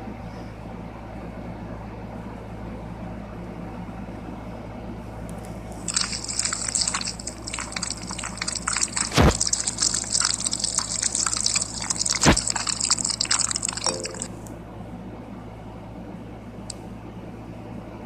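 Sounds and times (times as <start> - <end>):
slime popping: 5.9 - 14.3
slime squishing: 5.9 - 14.4.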